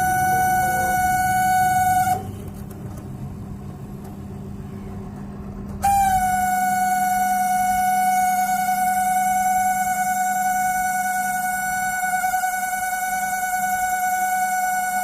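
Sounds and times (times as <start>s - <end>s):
fan motor horn-like drone: 0.0s - 15.0s
microwave oven running hum: 0.0s - 15.0s.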